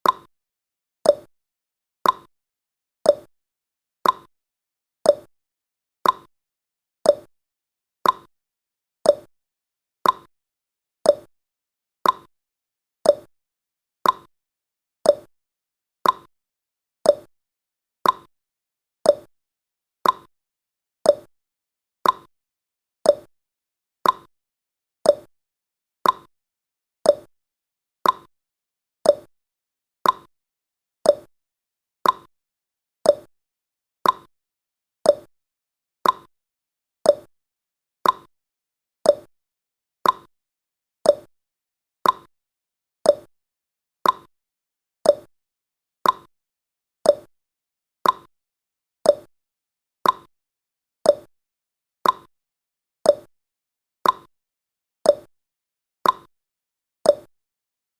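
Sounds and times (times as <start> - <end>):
clock ticking: 34.0 - 34.3, 36.0 - 36.3, 40.0 - 40.3, 42.0 - 42.3, 46.0 - 46.3, 48.0 - 48.3.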